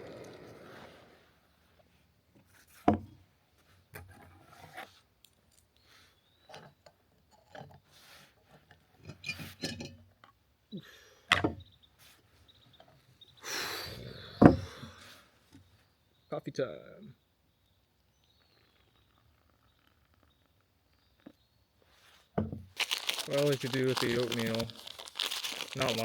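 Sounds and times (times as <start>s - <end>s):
camp cooking gear clinking and rattling: 22.7s - 26.0s.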